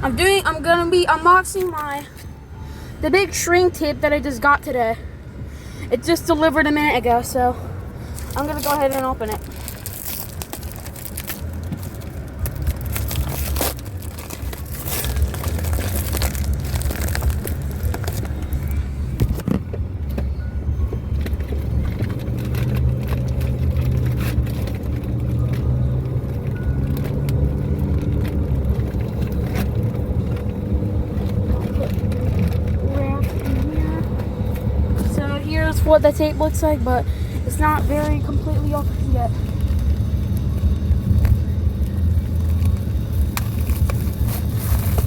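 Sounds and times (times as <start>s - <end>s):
car cabin rumble: 5.9s - 45.0s
package being torn open: 9.4s - 19.4s.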